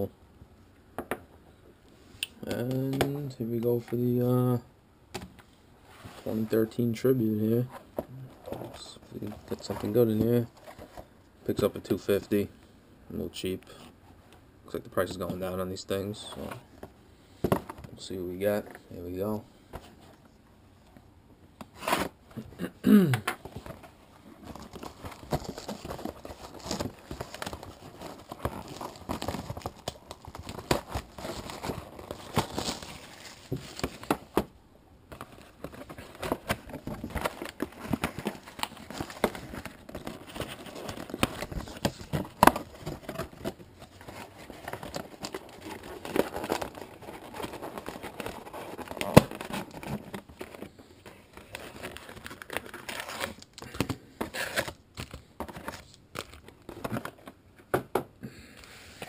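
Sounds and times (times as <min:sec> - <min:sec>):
plastic wrapping crinkling and tearing: 0:24.4 - 0:34.1, 0:35.3 - 0:50.7.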